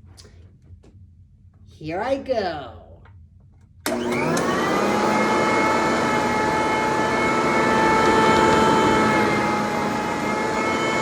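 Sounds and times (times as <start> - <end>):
vacuum cleaner running: 3.8 - 11.0.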